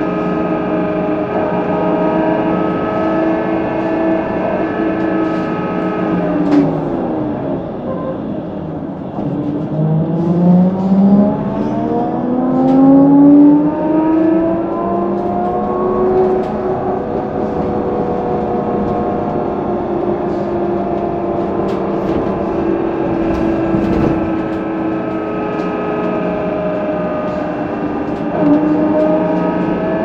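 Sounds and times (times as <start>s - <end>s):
trolleybus electric drive whine: 0.0s - 30.0s
bus body rattles: 15.2s - 29.8s.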